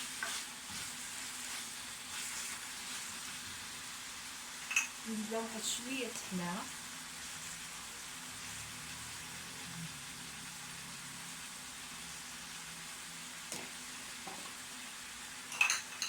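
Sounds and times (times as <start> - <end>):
meat sizzling in oil: 0.0 - 16.0.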